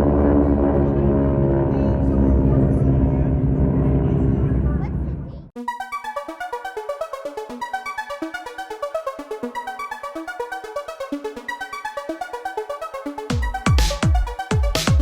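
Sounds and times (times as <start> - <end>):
synthesizer arpeggio: 5.6 - 15.0
heavy bass drum beat: 13.3 - 15.0.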